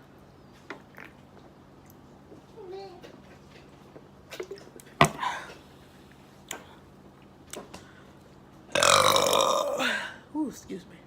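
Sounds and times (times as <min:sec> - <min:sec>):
loud burp: 0:08.7 - 0:10.1.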